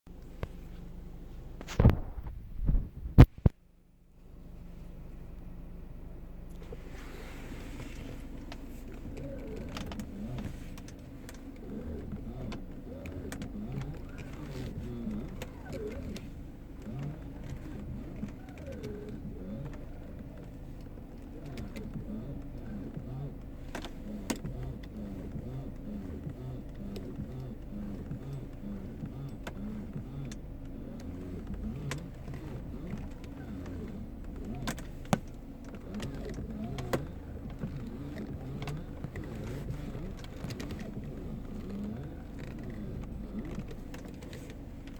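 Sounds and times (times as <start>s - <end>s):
car running rumble: 0.1s - 44.9s
low engine hum: 0.1s - 44.9s
steering squeaking and whining: 4.3s - 44.9s
sharp clicks: 7.9s - 44.9s.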